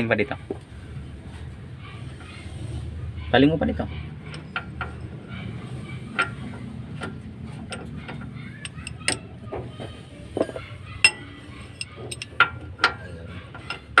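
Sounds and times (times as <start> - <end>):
hand tools clinking on metal: 4.2 - 9.3, 10.3 - 14.0.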